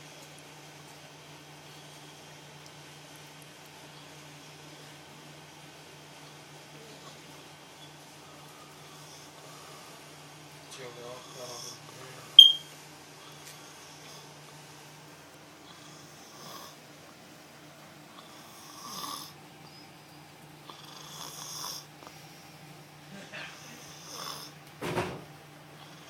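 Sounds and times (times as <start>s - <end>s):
snoring: 11.1s - 11.8s, 15.7s - 16.8s, 18.2s - 19.4s, 20.7s - 21.9s, 23.5s - 24.6s.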